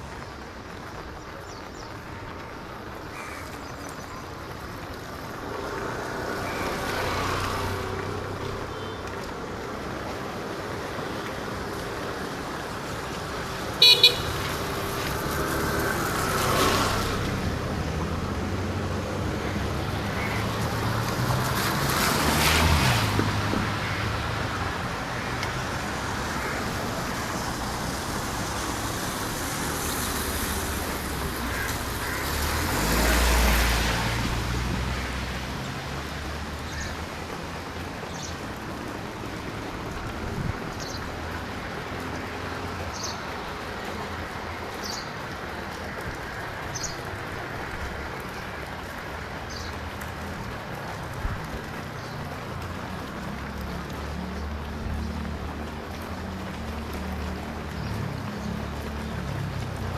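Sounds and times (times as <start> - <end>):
vehicles passing: 0.0 - 59.9
double horn toot: 13.8 - 14.5.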